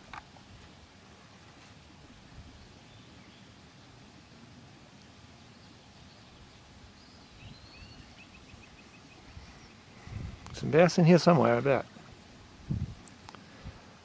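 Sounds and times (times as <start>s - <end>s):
low hiss of open air: 0.0s - 14.0s
bird whistling: 7.4s - 9.8s.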